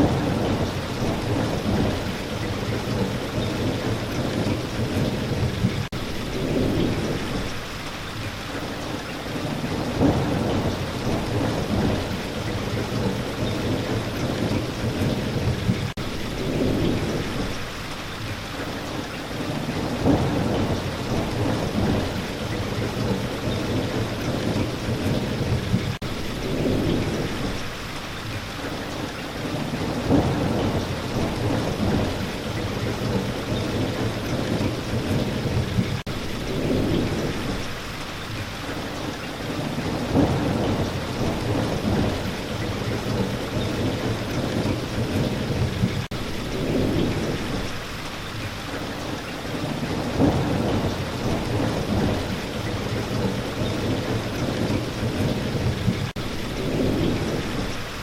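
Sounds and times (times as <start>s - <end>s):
thunder rumbling: 0.0s - 7.7s, 8.7s - 17.8s, 18.6s - 28.3s, 29.0s - 38.0s, 38.7s - 58.0s
steady rain: 0.0s - 58.0s.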